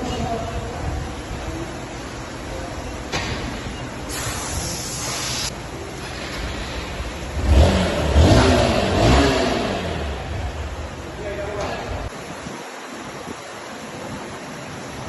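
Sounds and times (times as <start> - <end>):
brief hiss: 4.1 - 5.5
motorcycle engine idling and revving: 5.6 - 12.1.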